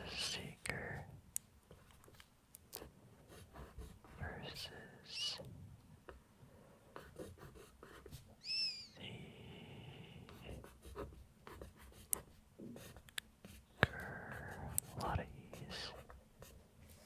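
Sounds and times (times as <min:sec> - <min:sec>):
pencil scratching on paper: 0:07.0 - 0:08.2, 0:10.3 - 0:16.6.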